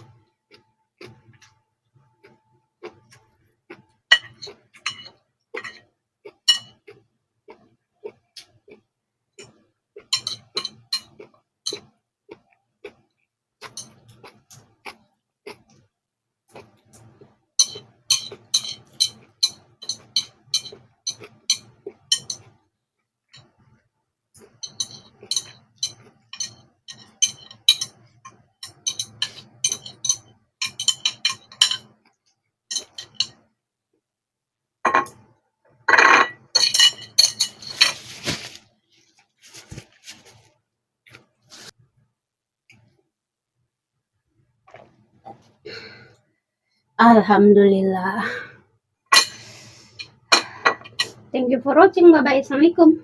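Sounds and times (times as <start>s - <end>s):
utensil clinking on plate: 4.1s - 5.8s, 6.5s - 6.8s, 10.1s - 11.1s, 17.6s - 22.5s, 24.4s - 28.0s, 28.6s - 32.0s, 32.7s - 33.4s, 35.9s - 38.6s, 49.1s - 51.2s.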